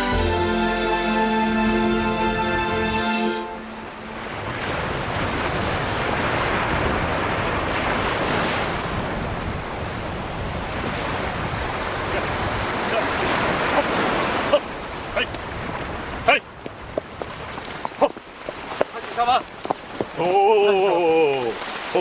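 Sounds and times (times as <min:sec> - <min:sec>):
sea surf washing in: 0:00.0 - 0:16.0, 0:21.2 - 0:22.0
wind: 0:00.0 - 0:22.0.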